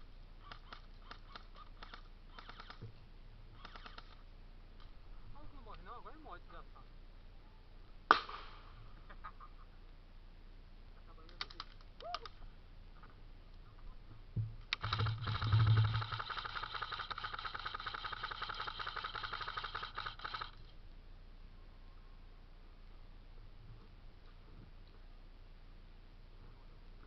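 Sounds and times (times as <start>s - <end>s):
airsoft gun firing full auto: 0.4s - 2.8s, 3.6s - 4.2s, 14.8s - 20.6s
sharp clicks: 0.4s - 2.9s, 3.6s - 4.2s, 11.2s - 12.4s, 14.6s - 20.7s.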